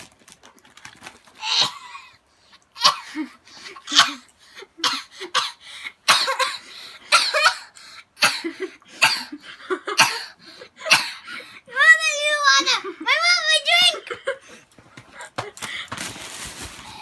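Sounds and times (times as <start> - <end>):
person coughing: 1.4 - 2.1, 2.8 - 11.4.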